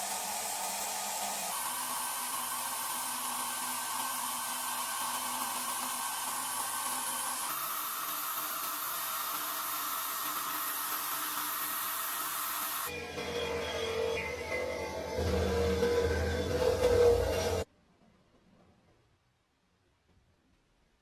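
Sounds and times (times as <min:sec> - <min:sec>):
small electric motor whirring: 0:00.0 - 0:12.9.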